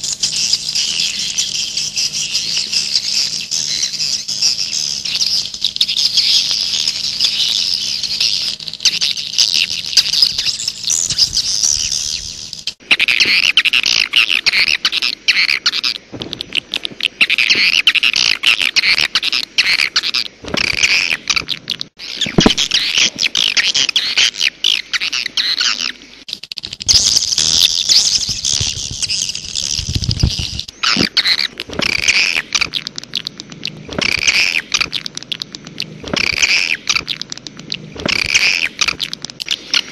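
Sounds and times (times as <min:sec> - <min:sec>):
high twittering bird chirps: 0:00.0 - 0:26.0, 0:26.6 - 0:39.9
rapid clicking: 0:31.4 - 0:39.9.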